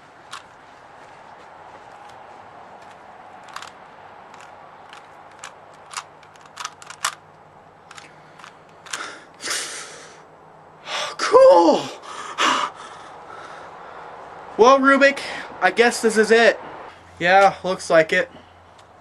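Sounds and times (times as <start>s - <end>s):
plastic puzzle cube clicking: 2.8s - 7.2s, 7.9s - 9.1s.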